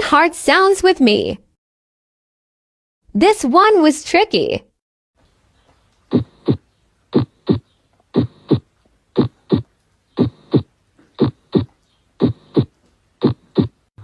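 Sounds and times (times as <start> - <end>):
heartbeat: 6.1 - 13.9.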